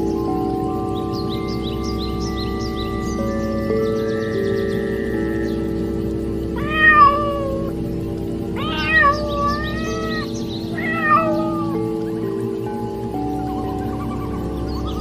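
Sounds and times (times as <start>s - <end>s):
soft background music: 0.0s - 15.0s
cat meowing: 6.6s - 7.7s, 8.6s - 11.8s.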